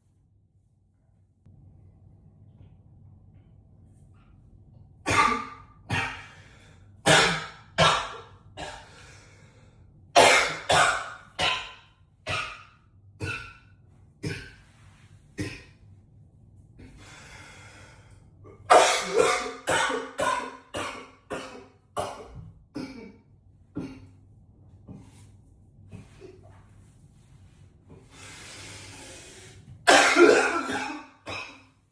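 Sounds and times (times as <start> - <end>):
man coughing hard: 5.1 - 6.3, 7.1 - 8.9, 10.2 - 12.6, 18.7 - 23.2, 29.9 - 31.7
drawn-out breath: 28.1 - 29.6.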